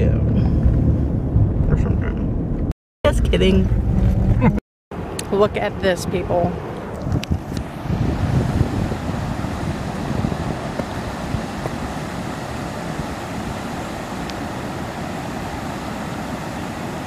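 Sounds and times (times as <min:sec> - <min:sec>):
wind buffeting microphone: 0:00.0 - 0:17.0
waterfall rushing: 0:08.5 - 0:17.0.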